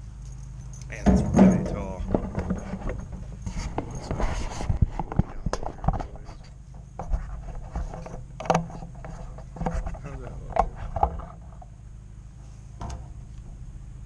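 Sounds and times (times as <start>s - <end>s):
low steady hum: 0.0s - 14.0s
scraping and scratching: 0.8s - 11.7s.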